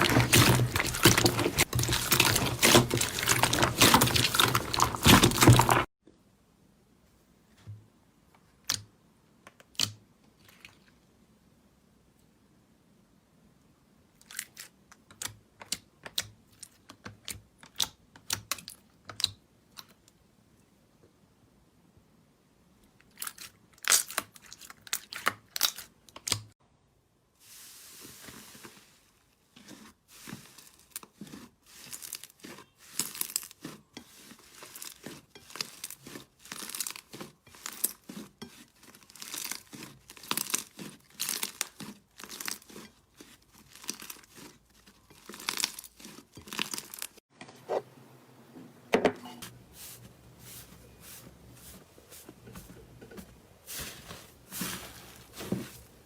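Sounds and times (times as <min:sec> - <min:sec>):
slime crackling and popping: 0:34.5 - 0:47.2.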